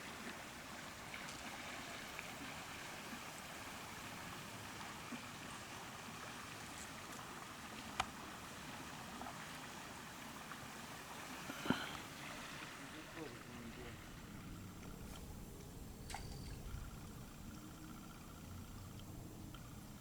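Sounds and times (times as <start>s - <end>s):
water washing around kayak: 0.0s - 15.9s.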